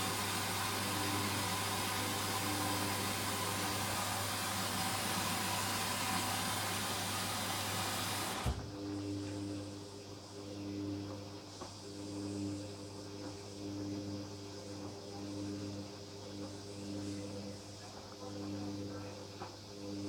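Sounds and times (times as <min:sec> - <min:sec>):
water rushing hiss: 0:00.0 - 0:08.6
low mains hum: 0:00.0 - 0:20.0.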